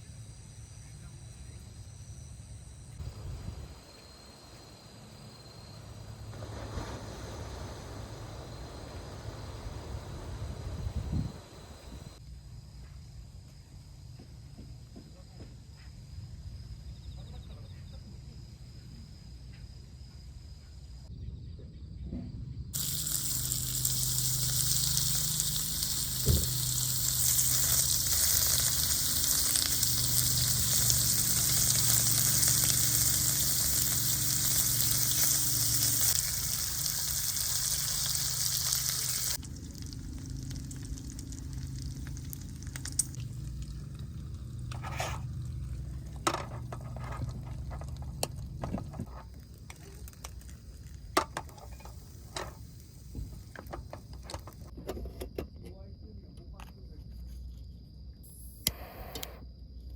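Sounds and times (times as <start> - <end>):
insects trilling: 0.0 - 59.9
food sizzling in a frying pan: 22.8 - 54.2.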